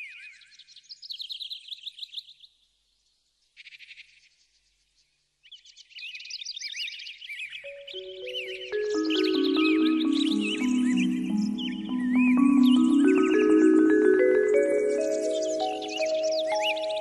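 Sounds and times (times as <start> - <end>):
small birds chirping: 5.6 - 17.0
soft music with held notes: 7.6 - 17.0.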